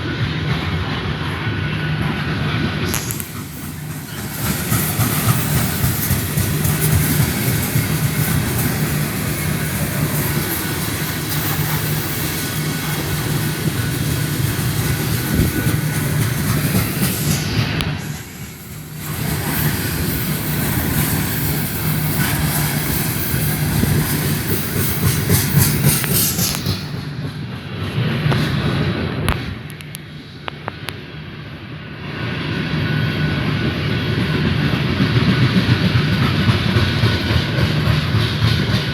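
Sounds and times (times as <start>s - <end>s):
freight train cars rumbling past: 0.0s - 38.9s
wheels clacking over rail joints: 3.2s - 18.1s, 18.7s - 28.5s.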